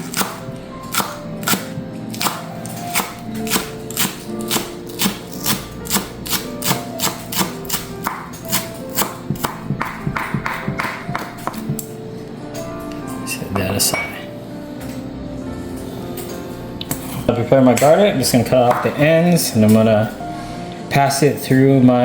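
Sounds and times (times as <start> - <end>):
knife chopping on cutting board: 0.0 - 11.8
background music: 0.0 - 22.0.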